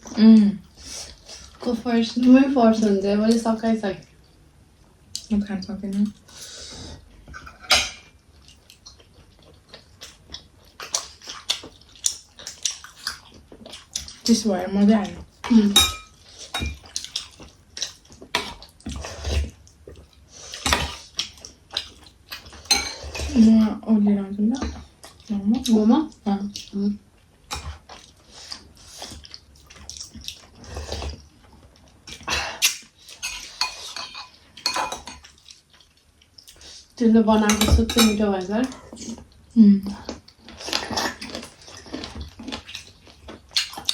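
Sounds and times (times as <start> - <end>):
dishes and utensils clinking: 15.5 - 16.8, 22.7 - 23.4, 33.2 - 35.3, 37.4 - 38.3
chewing and lip smacking: 40.0 - 43.9.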